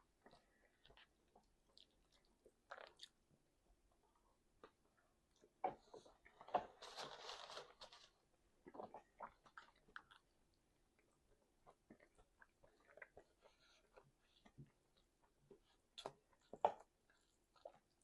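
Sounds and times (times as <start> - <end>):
person chewing food: 0.2 - 3.2, 8.6 - 18.0.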